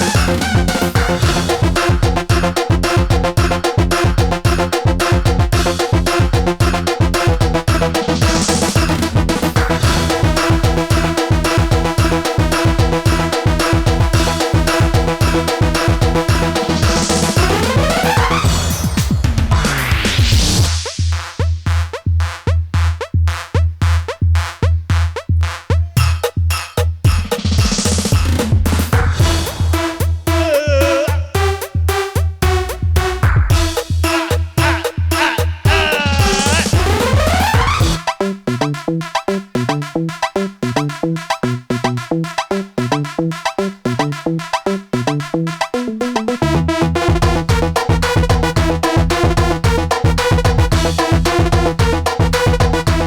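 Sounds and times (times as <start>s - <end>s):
electronic dance music: 0.0s - 21.4s, 24.6s - 53.0s
heavy bass kick drum: 0.0s - 24.0s, 27.0s - 38.0s, 47.0s - 53.0s
choppy synthesizer riff: 0.0s - 53.0s.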